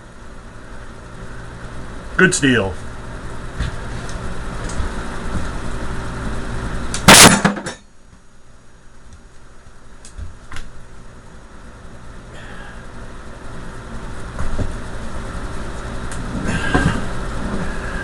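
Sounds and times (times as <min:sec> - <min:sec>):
steady background noise: 0:00.0 - 0:18.0.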